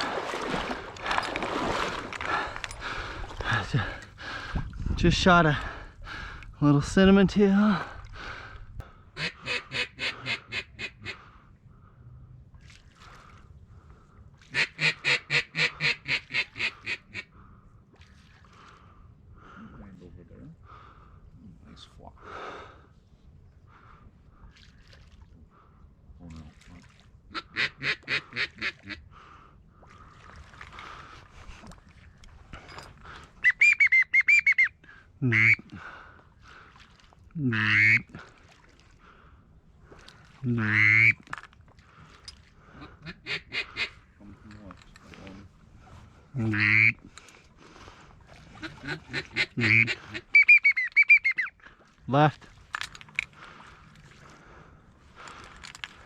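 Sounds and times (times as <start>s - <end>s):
duck quacking: 9.2s - 11.2s, 14.5s - 17.3s, 27.3s - 29.0s, 33.4s - 35.7s, 37.5s - 38.1s, 40.6s - 41.2s, 42.8s - 44.0s, 46.4s - 47.0s, 48.5s - 51.5s
whistled duck calls: 33.4s - 35.7s, 40.7s - 41.2s, 48.6s - 51.6s.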